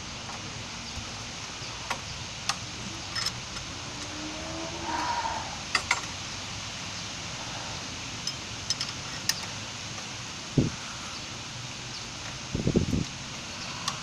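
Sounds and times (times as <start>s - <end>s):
steady background hum: 0.0s - 14.0s
metal tools clinking: 3.1s - 4.1s.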